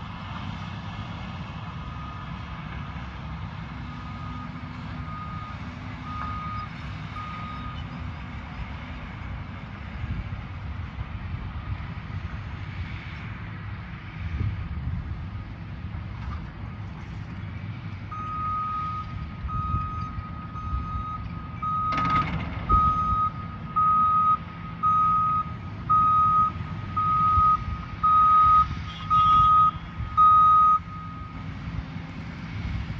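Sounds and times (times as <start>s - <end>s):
low engine rumble: 0.0s - 32.9s
reversing alarm beeping: 4.0s - 7.8s, 18.1s - 31.5s.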